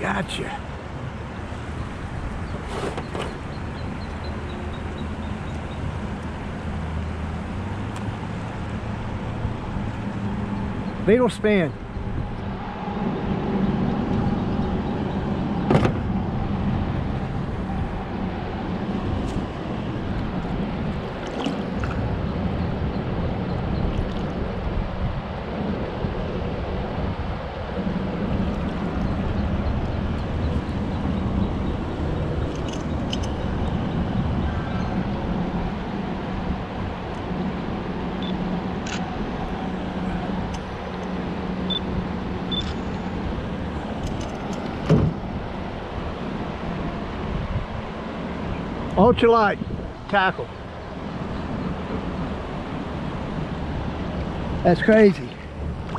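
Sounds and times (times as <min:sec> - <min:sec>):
wind and water rushing: 0:00.0 - 0:55.9
boat motor humming: 0:00.6 - 0:48.9, 0:50.0 - 0:55.9
sharp click: 0:42.5 - 0:42.9.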